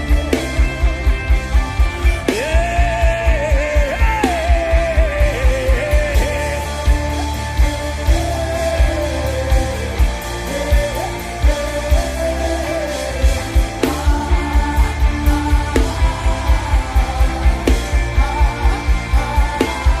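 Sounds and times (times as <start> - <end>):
low bass pulses: 0.0 - 20.0.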